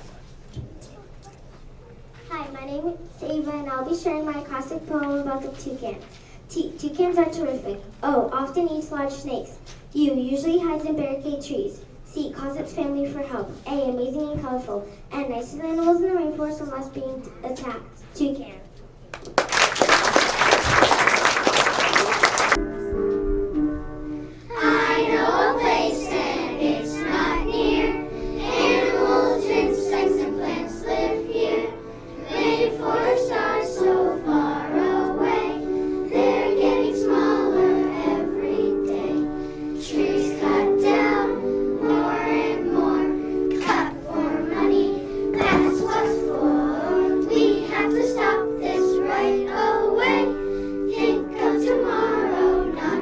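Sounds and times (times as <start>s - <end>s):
applause: 19.1s - 22.6s
instrumental accompaniment: 20.4s - 53.0s
children singing: 24.5s - 53.0s.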